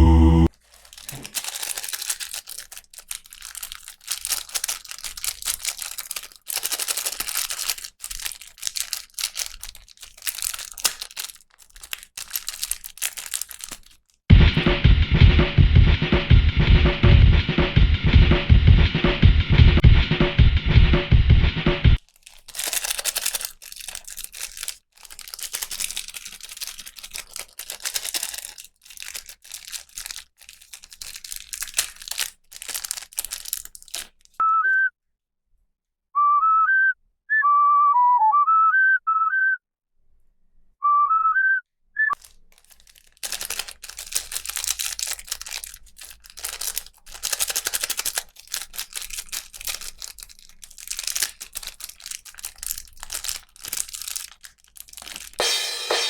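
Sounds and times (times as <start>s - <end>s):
plastic packaging crinkling: 0.5s - 14.3s, 22.0s - 34.4s, 42.1s - 55.8s
person whistling a tune: 34.4s - 35.0s, 36.2s - 39.6s, 40.8s - 42.2s.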